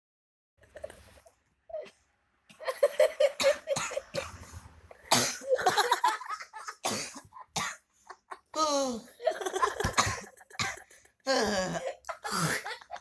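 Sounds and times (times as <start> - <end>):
man coughing: 9.8 - 12.8.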